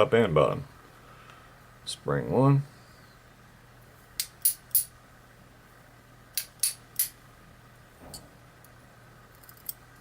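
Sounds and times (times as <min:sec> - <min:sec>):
small metal lock parts clicking: 0:09.3 - 0:09.8.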